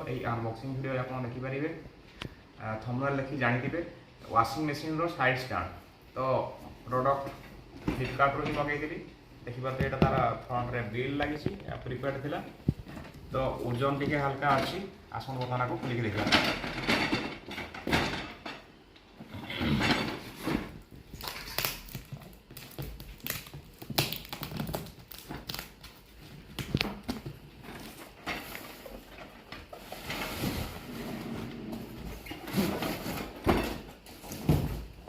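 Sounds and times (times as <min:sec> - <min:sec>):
packaging rustling: 0:20.8 - 0:30.6.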